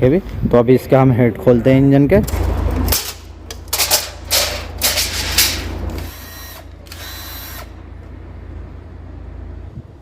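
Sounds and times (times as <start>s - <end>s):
power tool whirring: 5.9s - 7.8s.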